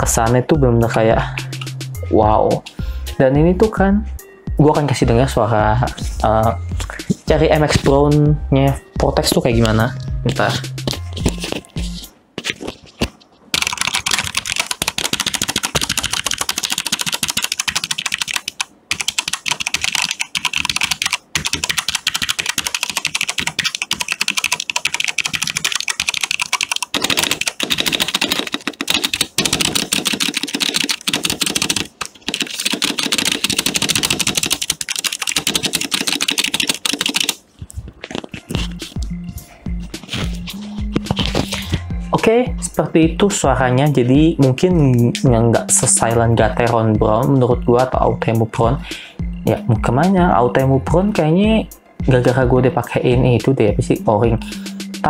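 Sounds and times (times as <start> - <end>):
fast mechanical keyboard typing: 13.5 - 37.4.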